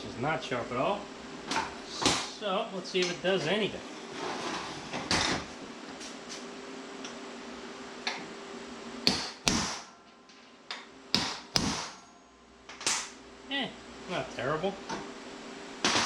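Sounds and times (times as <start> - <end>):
hammer striking punch on steel: 9.0 - 9.9, 11.1 - 12.1.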